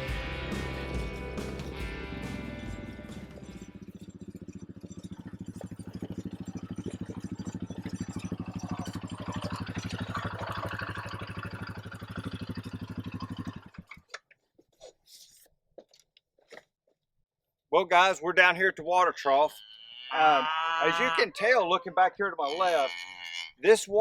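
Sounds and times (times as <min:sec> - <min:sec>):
small engine running: 0:00.0 - 0:14.2, 0:19.6 - 0:23.6.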